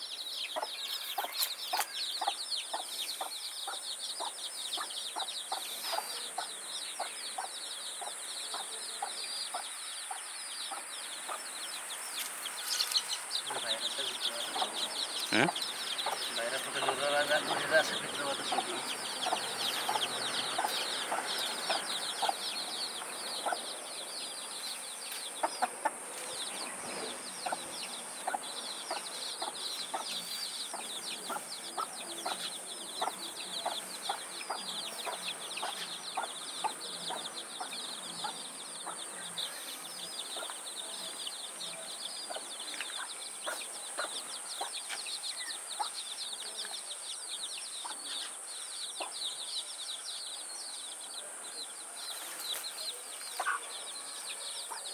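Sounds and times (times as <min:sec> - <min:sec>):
chicks peeping: 0:00.0 - 0:54.9
hen clucking: 0:00.4 - 0:24.1, 0:25.1 - 0:41.4.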